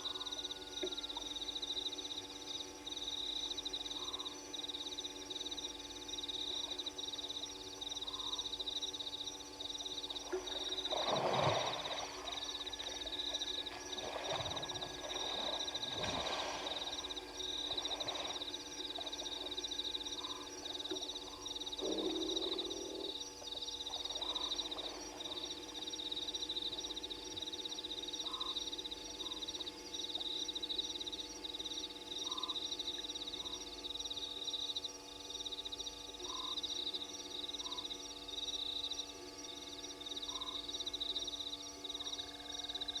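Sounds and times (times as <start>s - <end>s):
frogs croaking: 0.0s - 43.0s
frogs trilling: 0.0s - 43.0s
low hooting tone: 10.3s - 25.7s.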